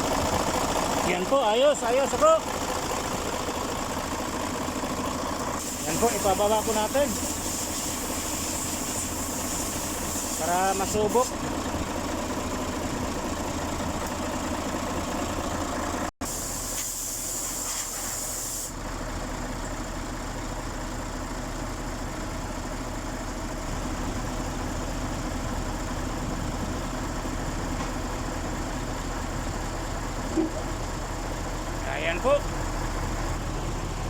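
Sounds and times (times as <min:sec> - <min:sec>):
diesel truck engine idling: 0:00.0 - 0:16.6, 0:18.7 - 0:34.0
hiss: 0:05.6 - 0:11.3, 0:16.3 - 0:18.8.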